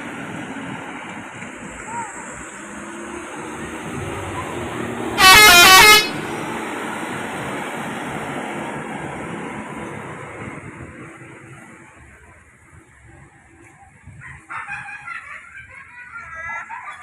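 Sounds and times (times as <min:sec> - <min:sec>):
traffic noise: 0:00.0 - 0:17.0
musical vehicle horn notes: 0:05.2 - 0:06.4.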